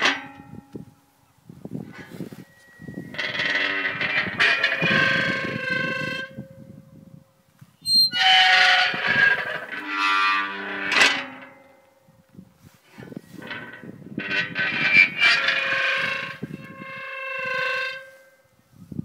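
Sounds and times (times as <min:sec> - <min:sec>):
loud drawn-out squeaking: 0:01.8 - 0:06.8, 0:07.8 - 0:11.9, 0:12.9 - 0:18.5
short high squeak: 0:01.9 - 0:06.4, 0:07.8 - 0:11.4.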